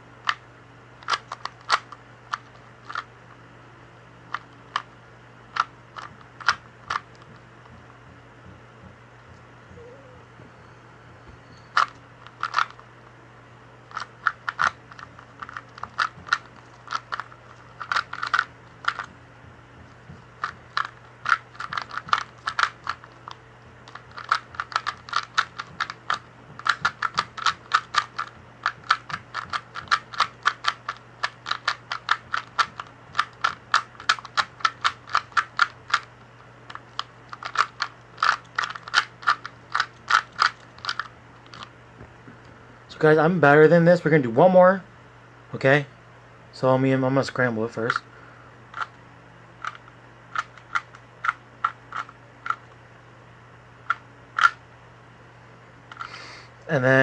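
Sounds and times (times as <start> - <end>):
puzzle cube clicking as turned: 1.0 - 3.1, 13.9 - 19.1, 20.4 - 36.1, 36.7 - 41.7.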